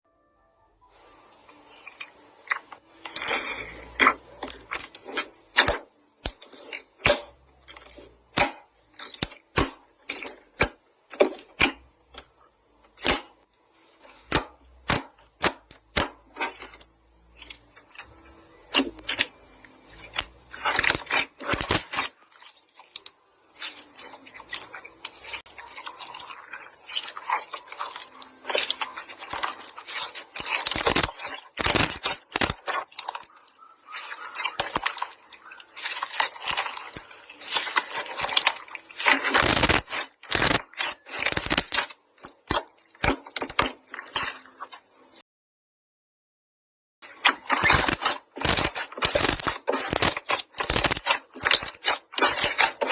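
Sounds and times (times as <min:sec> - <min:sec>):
wet clicks and pops: 0:02.0 - 0:12.3, 0:14.2 - 0:18.1, 0:18.7 - 0:22.1, 0:27.0 - 0:33.4, 0:34.0 - 0:44.4, 0:47.2 - 0:52.9.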